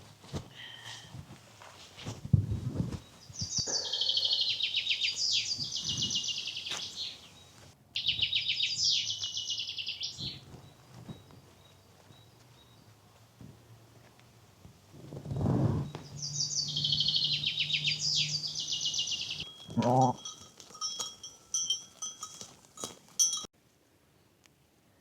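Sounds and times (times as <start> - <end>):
songbird trilling: 3.3 - 12.8, 15.8 - 20.1.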